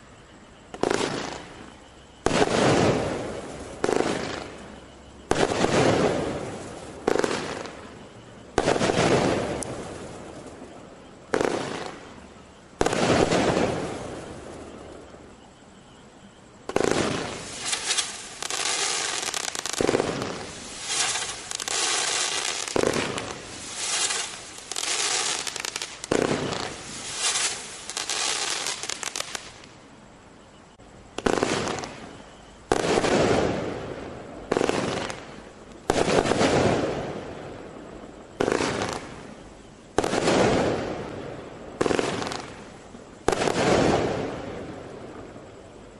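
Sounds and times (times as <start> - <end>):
firework crackling bursts: 0.7 - 15.1, 16.6 - 29.8, 31.0 - 45.4
firework shots launching: 16.7 - 29.6.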